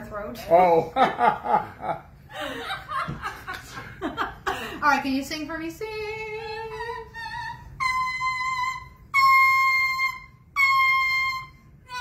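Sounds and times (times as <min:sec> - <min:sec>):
parrot singing high notes: 0:07.4 - 0:12.0.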